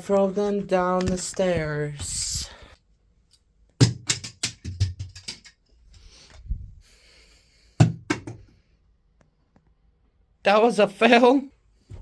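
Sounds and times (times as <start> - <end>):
plastic objects clattering down stairs: 3.8 - 5.6, 7.8 - 8.6.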